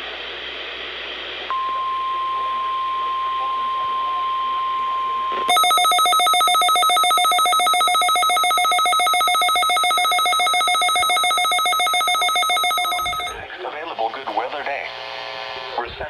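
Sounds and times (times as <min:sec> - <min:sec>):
electronic alert trill: 0:05.5 - 0:13.4
steady warning tone: 0:05.5 - 0:13.4.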